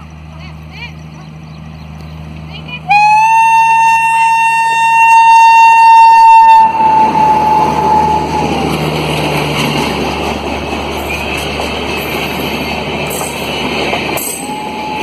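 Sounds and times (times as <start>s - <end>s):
passing train rumble: 0.0s - 15.0s
locomotive air horn: 2.9s - 8.8s, 14.3s - 15.0s.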